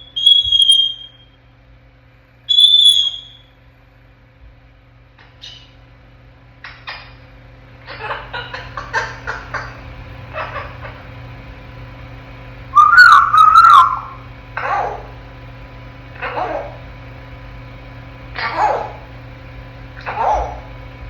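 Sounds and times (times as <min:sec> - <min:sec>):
parrot wavering whistle: 0:00.0 - 0:01.4, 0:02.5 - 0:03.5, 0:12.7 - 0:14.2.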